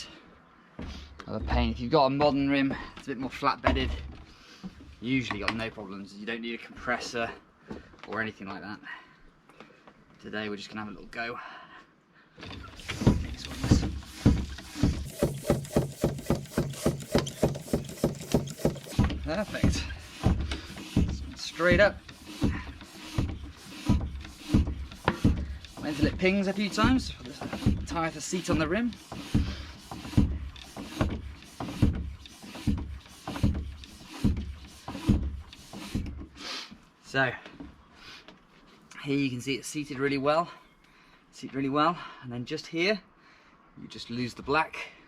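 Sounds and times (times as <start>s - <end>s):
hand pump strokes: 12.5s - 36.4s.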